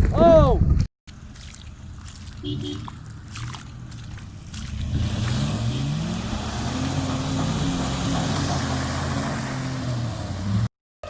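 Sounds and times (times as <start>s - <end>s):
vehicle engine revving: 2.0s - 10.7s.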